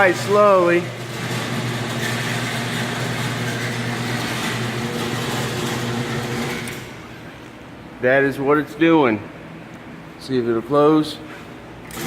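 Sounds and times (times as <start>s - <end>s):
garage door opener humming: 0.0s - 7.5s, 11.8s - 12.0s.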